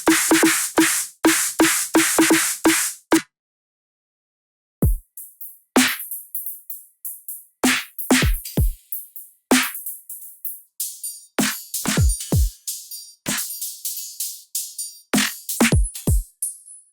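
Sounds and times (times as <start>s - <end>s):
deep electronic kick drums: 4.8s - 5.0s, 8.2s - 8.8s, 11.9s - 12.5s, 15.7s - 16.3s.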